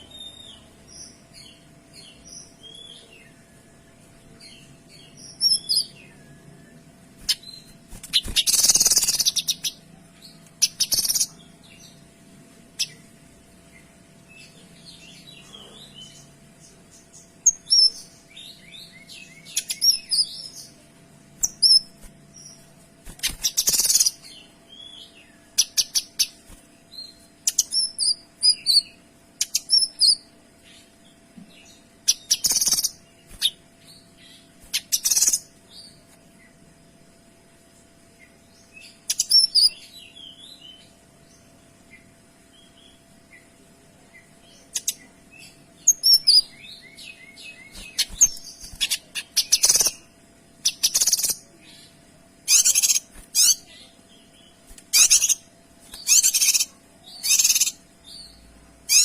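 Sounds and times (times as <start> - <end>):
rapid ticking bird rattles: 7.3 - 9.4
harsh rasping bird calls: 52.4 - 53.9, 54.9 - 57.8
songbird chirping and whistling: 54.9 - 59.0.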